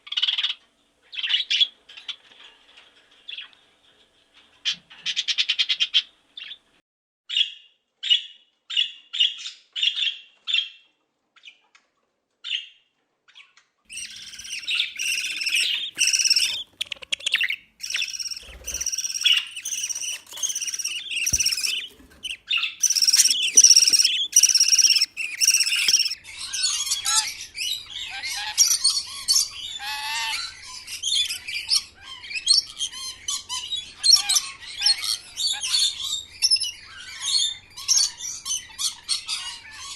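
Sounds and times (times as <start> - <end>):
budgerigar chirps: 13.9 - 27.4
flock of parrots chattering: 13.9 - 39.9
parrot chicks calling loudly: 13.9 - 39.9.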